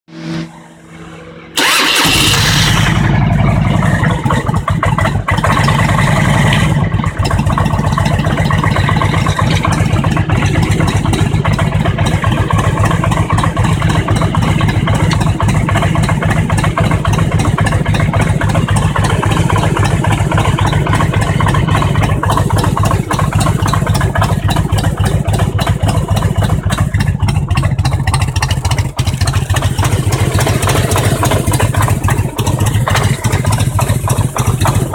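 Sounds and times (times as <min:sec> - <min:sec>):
motorcycle engine knocking: 0:03.2 - 0:34.9.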